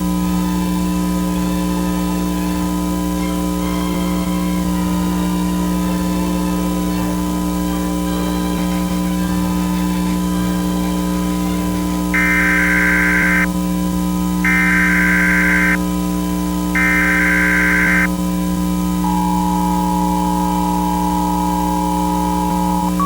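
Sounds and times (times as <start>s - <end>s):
constant low hum: 12.1s - 13.5s, 14.4s - 15.8s, 16.4s - 23.0s
buzzy data bursts: 12.2s - 13.5s, 14.5s - 15.8s, 16.8s - 18.1s
two-tone attention signal: 12.2s - 13.5s, 14.5s - 15.8s, 16.8s - 18.1s, 19.0s - 23.0s.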